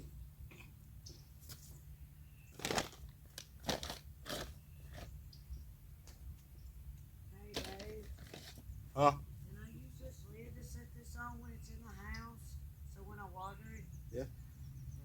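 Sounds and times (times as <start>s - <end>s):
steady low hum: 0.0s - 15.0s
short crunching scrapes: 2.5s - 5.2s, 7.6s - 8.7s.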